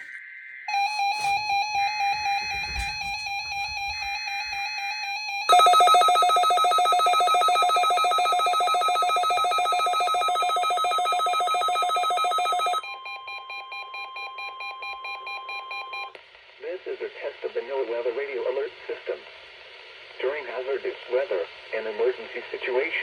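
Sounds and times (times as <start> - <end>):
rapidly pulsing alert tone: 0.7 - 12.8.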